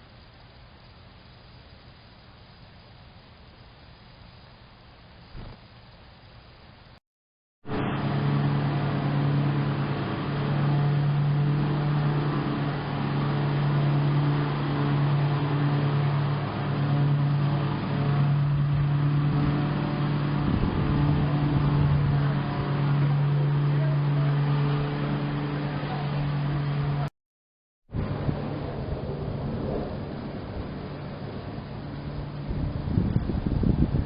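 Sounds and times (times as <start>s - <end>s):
engine humming: 7.7s - 27.1s, 27.9s - 34.0s.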